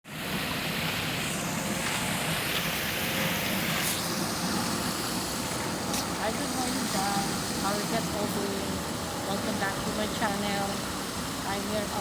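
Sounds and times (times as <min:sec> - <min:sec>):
running water rushing: 0:00.1 - 0:12.0.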